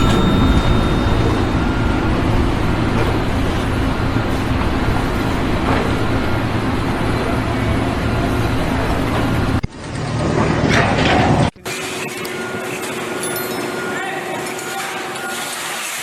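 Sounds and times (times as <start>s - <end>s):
large engine rumbling: 0.0s - 9.6s.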